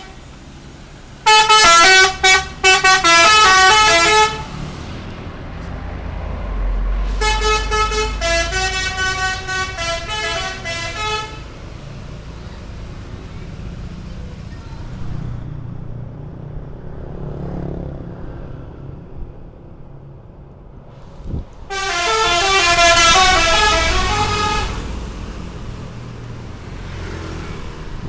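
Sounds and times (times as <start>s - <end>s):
coach engine rumbling: 0.0s - 16.3s, 18.8s - 28.0s
musical horn playing stepped notes: 21.7s - 24.9s.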